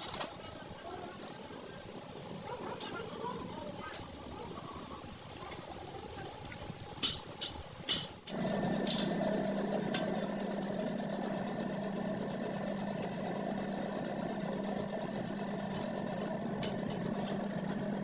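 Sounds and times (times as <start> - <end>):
machine humming: 8.3 - 18.0.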